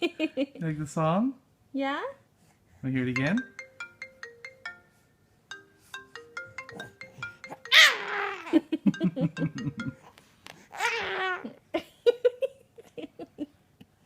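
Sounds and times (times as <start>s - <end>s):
faint chiming ringtone: 3.1s - 10.2s
child shrieking with delight: 7.7s - 8.6s, 10.7s - 11.5s
child laughing and giggling: 7.7s - 10.0s.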